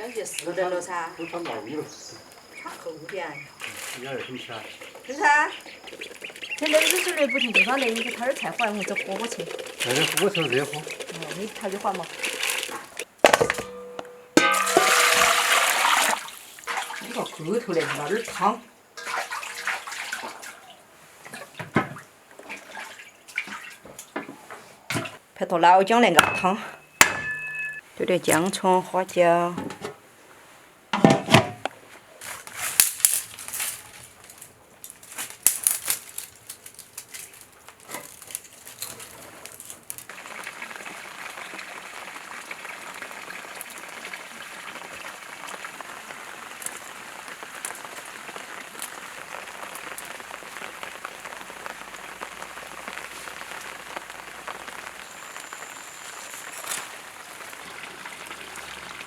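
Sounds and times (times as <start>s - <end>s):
steady hiss: 0.0s - 19.0s, 31.7s - 59.0s
kitchen knocks and clinks: 13.2s - 15.6s, 26.2s - 27.8s, 31.0s - 31.6s.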